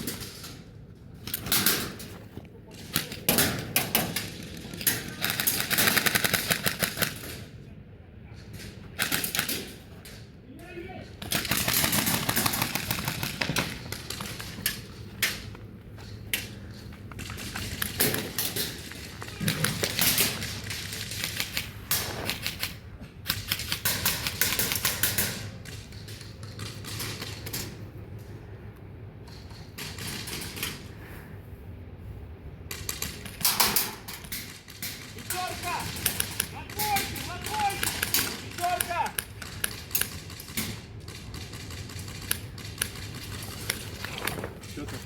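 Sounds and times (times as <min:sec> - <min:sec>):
airsoft guns firing bursts: 0:03.3 - 0:07.4, 0:11.2 - 0:14.8, 0:32.7 - 0:44.0.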